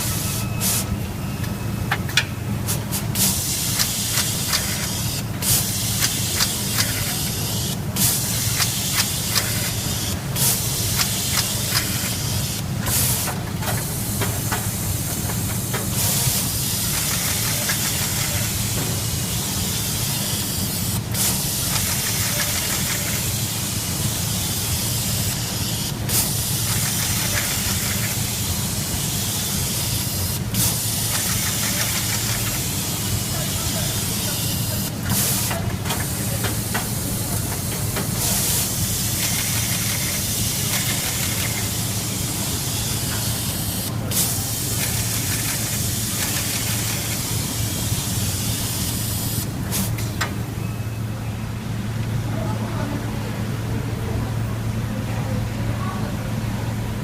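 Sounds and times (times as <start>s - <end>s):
hiss of air and fans: 0.0s - 57.0s
sharp machine clicks: 3.7s - 5.2s, 5.9s - 7.3s, 8.4s - 9.9s, 21.6s - 23.3s, 31.1s - 32.6s.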